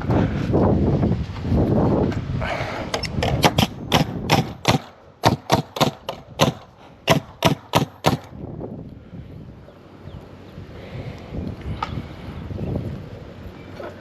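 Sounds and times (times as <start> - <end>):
sharp knocks on timber: 3.2 - 8.3.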